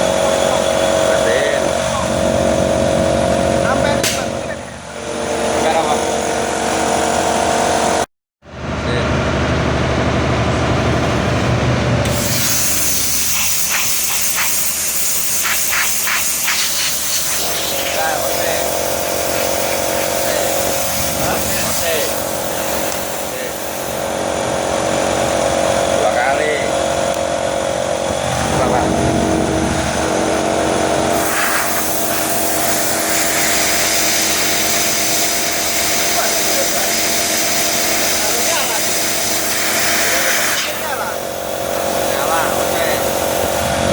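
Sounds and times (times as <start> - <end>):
constant motor hum: 0.0 - 43.9
machinery running: 0.0 - 43.9
mechanical hissing: 12.0 - 24.4, 31.1 - 43.8
higher sharper hiss: 12.1 - 24.2.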